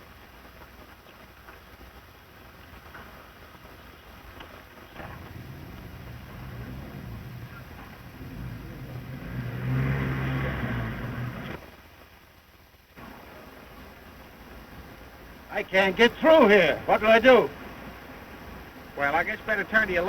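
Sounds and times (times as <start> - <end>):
car engine running: 4.9 - 11.6.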